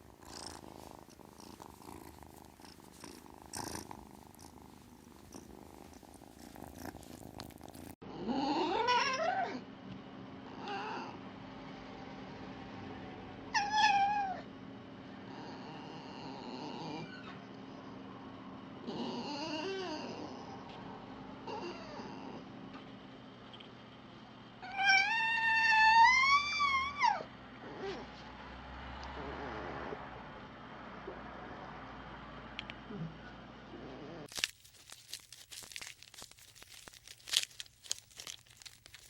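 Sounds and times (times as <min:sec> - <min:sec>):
cat purring: 0:00.0 - 0:08.4.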